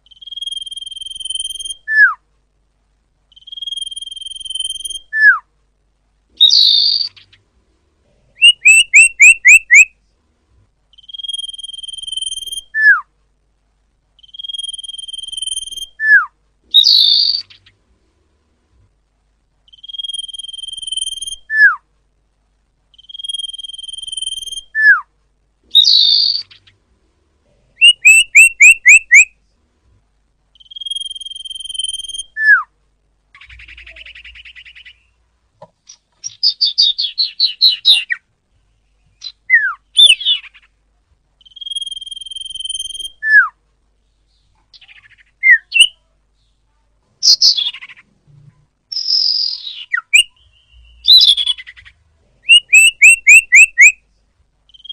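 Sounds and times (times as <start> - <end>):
flycatcher song: 0.0 - 2.2, 3.3 - 5.4, 8.4 - 9.9, 10.9 - 13.1, 14.2 - 17.8, 19.7 - 21.8, 22.9 - 25.1, 27.8 - 29.3, 30.5 - 32.7, 41.4 - 43.5, 48.9 - 54.0.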